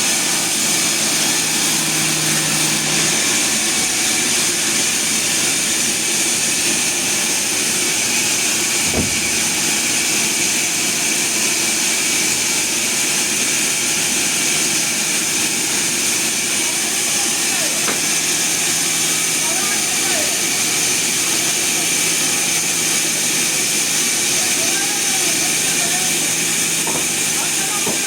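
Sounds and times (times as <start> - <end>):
sawmill machinery running: 0.0 - 28.0
faint knock: 8.9 - 9.4.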